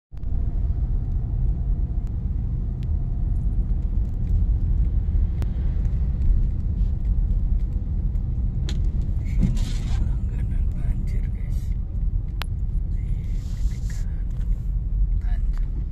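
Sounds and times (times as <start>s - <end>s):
car road and engine rumble: 0.1s - 15.9s
rain ticks: 0.7s - 9.2s.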